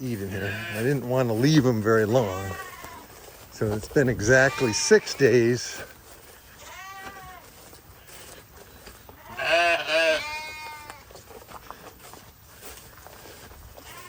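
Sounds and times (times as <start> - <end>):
sheep bleating: 0.2 - 3.2, 3.8 - 5.9, 6.5 - 7.6, 9.1 - 11.1, 13.8 - 14.0.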